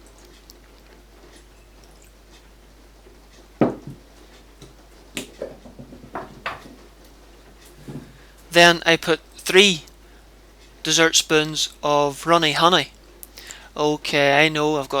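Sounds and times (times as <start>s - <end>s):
sauce bottle knocking: 3.6s - 4.0s.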